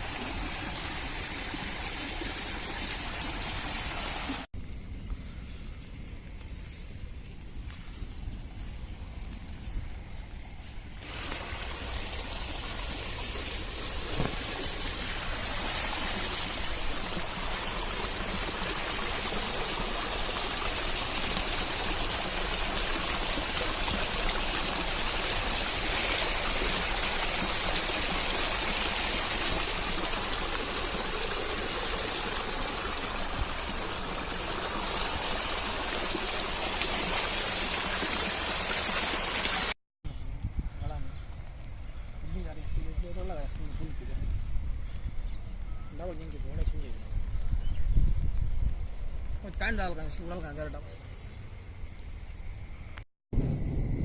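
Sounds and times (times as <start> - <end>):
heavy rain: 0.0 - 4.5, 11.0 - 39.8
rainwater rushing: 0.0 - 4.5, 11.0 - 39.8.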